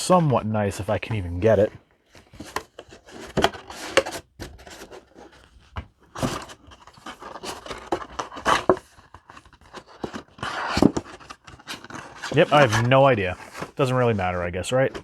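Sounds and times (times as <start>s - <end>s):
cardboard boxes scraping and rubbing: 1.2s - 15.0s.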